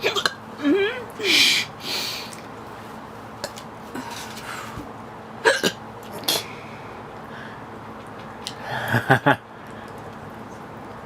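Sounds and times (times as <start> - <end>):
woman hiccuping: 0.0 - 1.7, 5.4 - 6.4.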